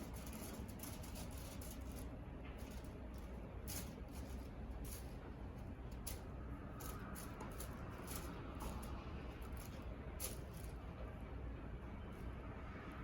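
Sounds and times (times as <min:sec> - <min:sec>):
kitten playing with toy: 0:00.0 - 0:10.9
low room hum: 0:00.0 - 0:13.0.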